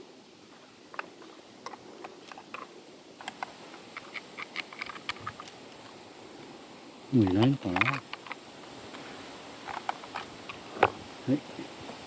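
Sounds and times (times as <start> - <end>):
light clicks and scratches: 0.9 - 6.5, 7.2 - 11.0.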